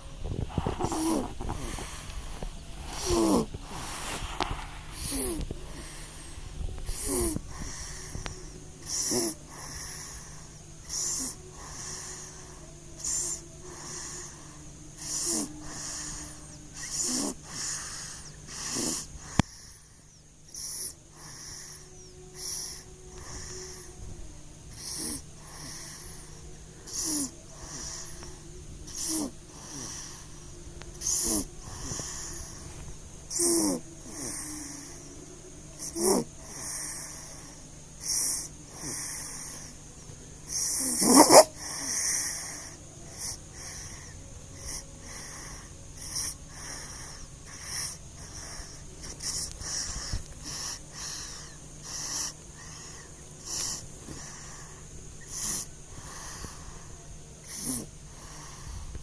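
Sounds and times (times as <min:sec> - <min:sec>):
baby snoring wheezily: 0:00.0 - 0:19.9, 0:20.5 - 0:24.0, 0:24.7 - 0:35.0, 0:35.8 - 0:39.7, 0:40.5 - 0:56.8, 0:57.4 - 0:59.0
steady low hum: 0:00.0 - 0:59.0.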